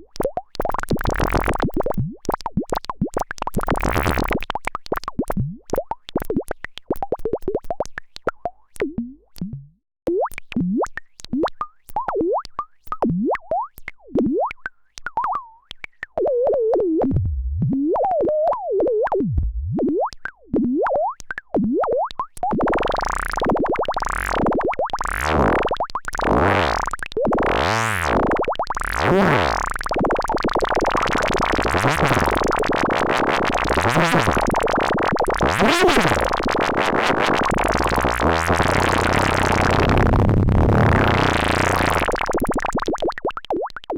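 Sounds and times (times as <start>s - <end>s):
warbling synthesizer tone: 22.8s - 30.0s, 30.8s - 42.4s.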